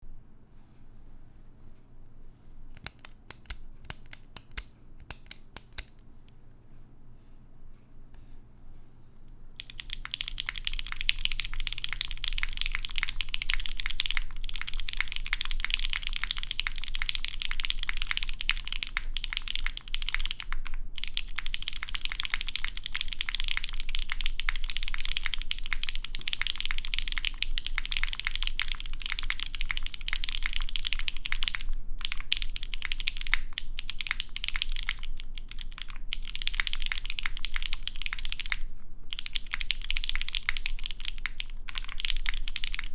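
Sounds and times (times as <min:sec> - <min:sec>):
mechanical keyboard typing: 0:02.8 - 0:06.0, 0:09.6 - 0:42.9.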